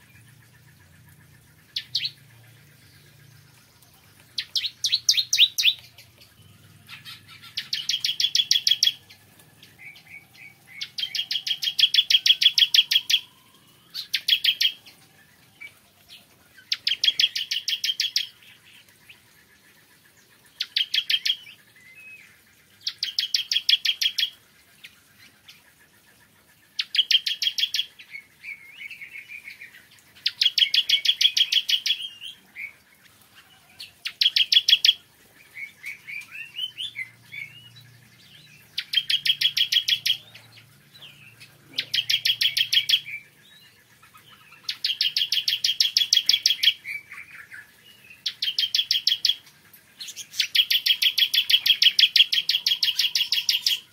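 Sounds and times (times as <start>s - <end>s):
soft bird twittering: 0.0s - 25.6s, 26.7s - 53.9s
bird trilling: 4.4s - 15.0s, 38.6s - 43.3s, 50.2s - 53.9s.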